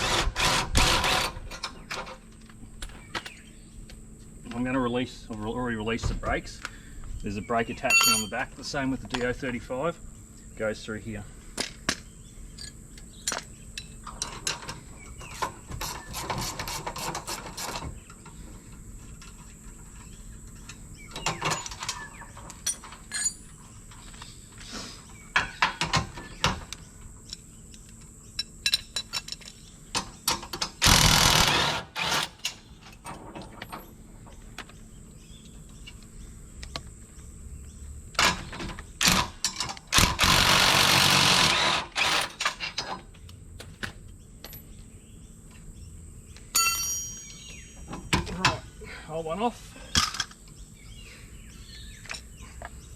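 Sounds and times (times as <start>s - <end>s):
metal clicks and knocks: 7.9s - 8.4s.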